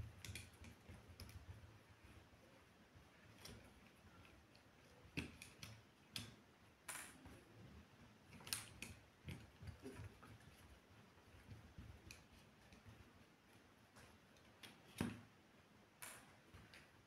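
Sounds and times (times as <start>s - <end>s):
light plastic clicks and taps: 0.0s - 1.6s, 3.3s - 7.5s, 8.3s - 10.7s, 11.3s - 13.0s.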